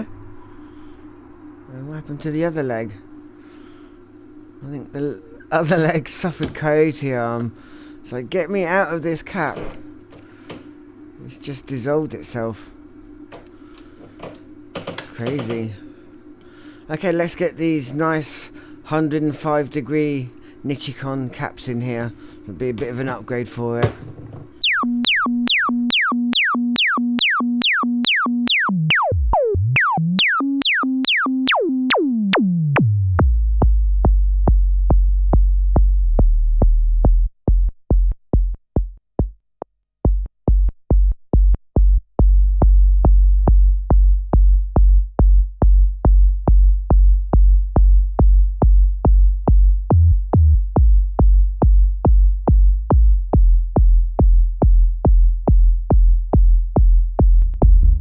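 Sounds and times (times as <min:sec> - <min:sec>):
heavy bass line: 0:23.8 - 0:37.7, 0:41.8 - 0:58.0
drum-machine beat: 0:24.6 - 0:36.2, 0:40.1 - 0:58.0.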